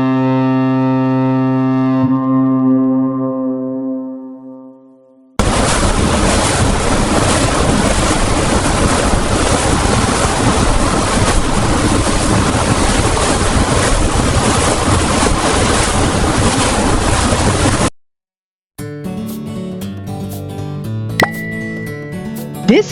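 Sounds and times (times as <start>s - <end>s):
wind: 5.4s - 17.0s
low rumble of ship: 5.4s - 17.9s
rushing water: 5.4s - 17.9s.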